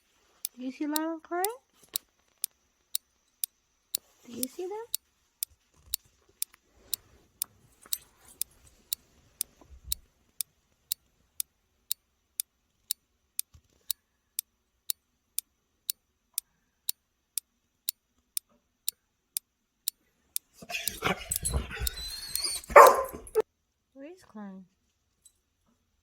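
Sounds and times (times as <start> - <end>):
clock ticking: 0.0 - 1.6, 4.4 - 5.0, 20.4 - 23.4.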